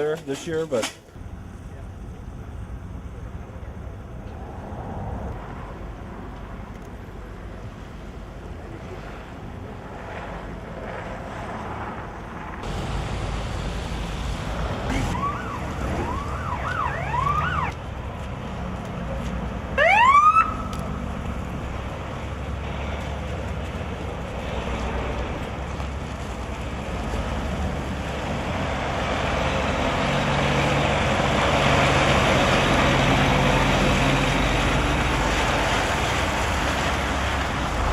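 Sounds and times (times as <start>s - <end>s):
siren whoop: 14.9s - 17.8s, 19.8s - 20.8s.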